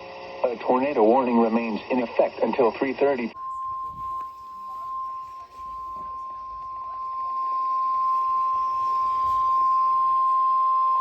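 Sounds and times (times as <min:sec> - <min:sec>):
faint radio static: 0:00.0 - 0:10.6
high alarm beep: 0:03.3 - 0:11.0.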